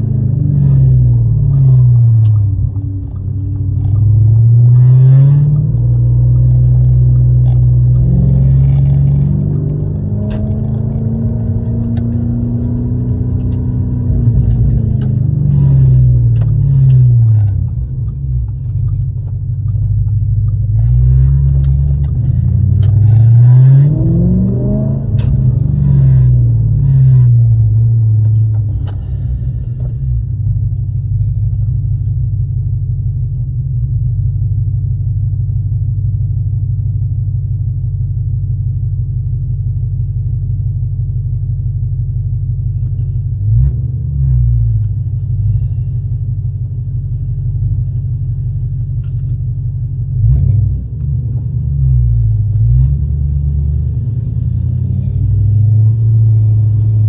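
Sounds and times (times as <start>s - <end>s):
car engine revving: 0.0s - 32.3s, 50.2s - 57.0s
deep exhaust drone: 0.0s - 57.0s.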